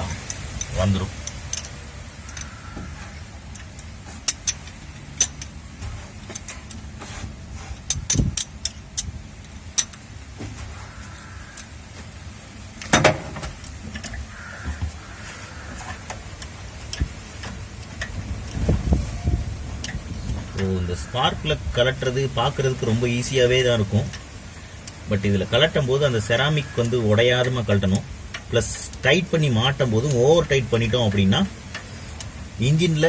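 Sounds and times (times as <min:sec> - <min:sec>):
metallic clicks of tools: 0:00.0 - 0:02.6, 0:03.5 - 0:05.6, 0:07.8 - 0:10.1
metal knocks: 0:12.8 - 0:15.0.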